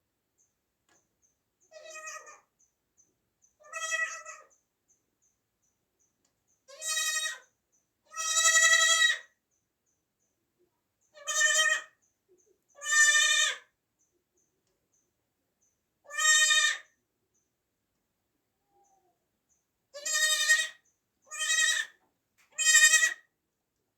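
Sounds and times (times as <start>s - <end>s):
baby goat bleating: 1.7s - 2.5s, 3.6s - 4.5s, 6.7s - 7.5s, 8.1s - 9.3s, 11.1s - 12.0s, 12.8s - 13.7s, 16.1s - 17.0s, 19.9s - 23.3s.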